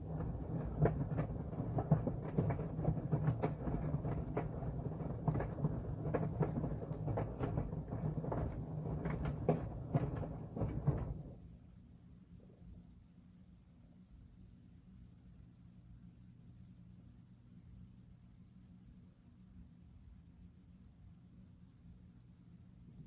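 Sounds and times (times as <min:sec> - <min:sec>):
tumbling load knocking: 0:00.0 - 0:11.4
washing machine motor hum: 0:00.0 - 0:11.5.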